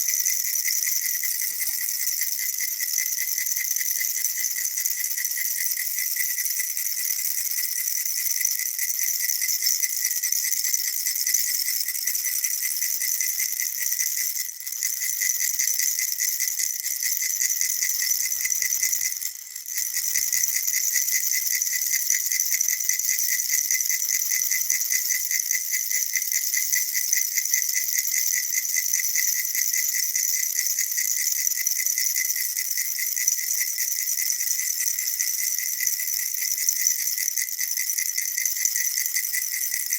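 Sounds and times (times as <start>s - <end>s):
baby rattle shaken fast: 0.0s - 39.9s.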